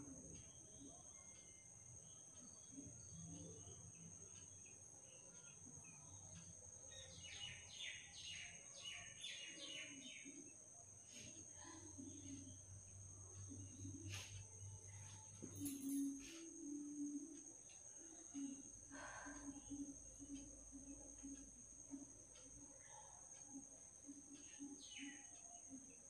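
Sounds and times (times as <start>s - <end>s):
faint bird chirping: 0.0s - 26.0s.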